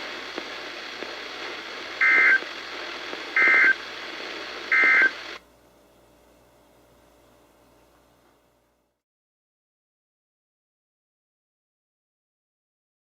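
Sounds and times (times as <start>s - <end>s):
radio hiss: 0.0s - 5.4s.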